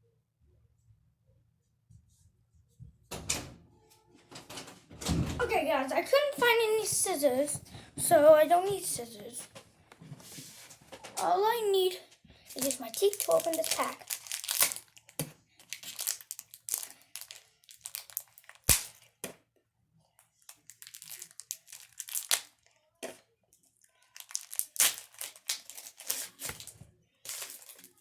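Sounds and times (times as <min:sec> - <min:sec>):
plastic wrapper crinkling and tearing: 0:11.2 - 0:19.1, 0:20.4 - 0:22.8, 0:23.8 - 0:28.0.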